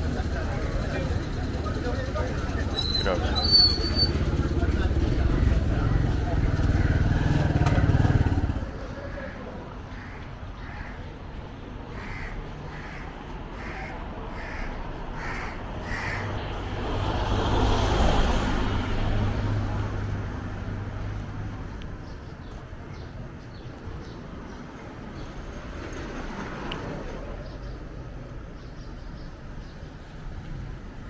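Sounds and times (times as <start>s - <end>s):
motor vehicle passing: 0.0s - 9.1s, 11.9s - 23.4s
crow cawing: 5.5s - 7.3s, 9.2s - 11.1s, 11.9s - 16.6s.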